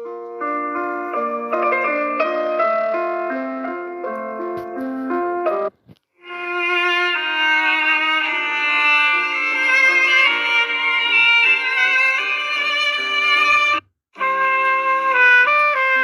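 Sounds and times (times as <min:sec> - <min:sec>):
mobile phone ringtone: 0:06.3 - 0:13.8.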